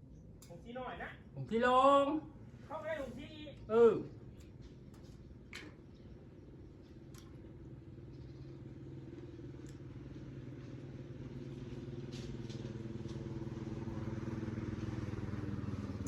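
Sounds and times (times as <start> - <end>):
vehicle engine running: 6.0 - 16.0.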